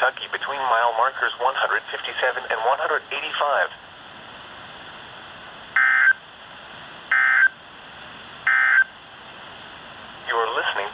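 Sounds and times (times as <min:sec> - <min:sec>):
steady hiss: 0:00.0 - 0:10.9
data tone bursts: 0:05.8 - 0:06.2, 0:07.1 - 0:07.6, 0:08.5 - 0:08.9.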